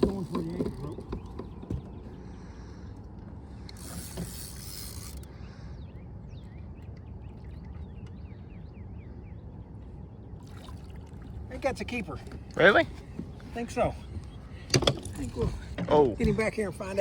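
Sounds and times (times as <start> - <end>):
fishing reel ticking: 3.7 - 5.3.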